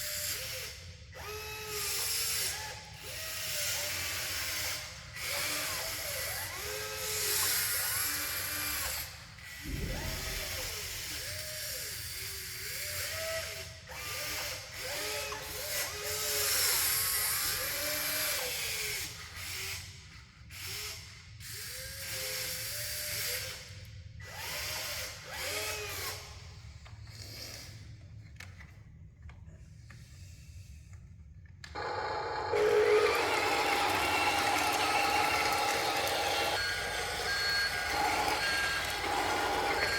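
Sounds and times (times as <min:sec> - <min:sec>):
small electric motors whining: 0:00.1 - 0:10.7, 0:31.7 - 0:39.9
steady machine sound: 0:09.6 - 0:11.5, 0:32.5 - 0:39.9.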